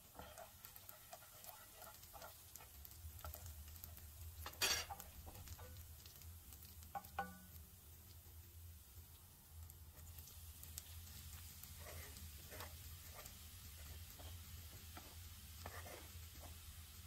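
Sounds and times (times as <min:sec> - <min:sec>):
spoon scraping in a pan: 0:00.0 - 0:07.6, 0:09.9 - 0:17.0.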